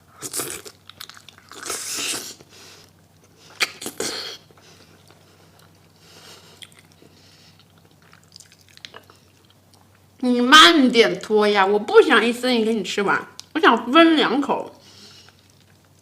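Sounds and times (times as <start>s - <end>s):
wet chewing mouth sounds: 0.2s - 10.0s.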